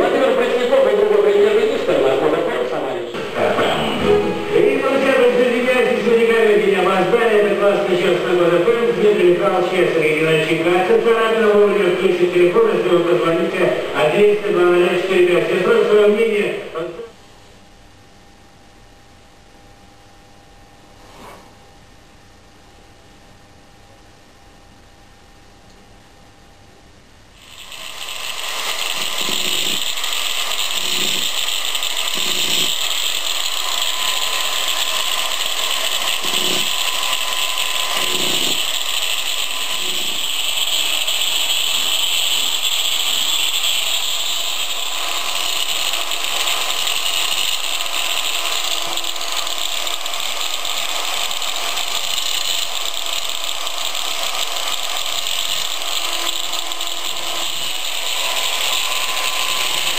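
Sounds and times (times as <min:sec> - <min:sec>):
power tool grinding: 0:03.2 - 0:16.2, 0:27.4 - 0:59.9.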